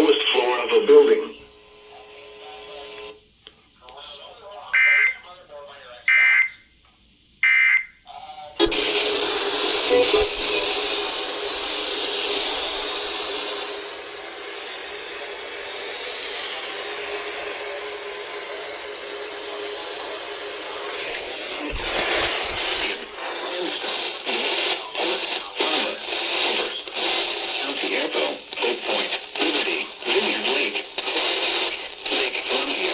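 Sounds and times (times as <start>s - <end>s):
static crackles: 0.0s - 3.2s, 8.6s - 14.0s, 21.0s - 32.9s
radio static hiss: 0.0s - 6.7s, 7.4s - 32.9s.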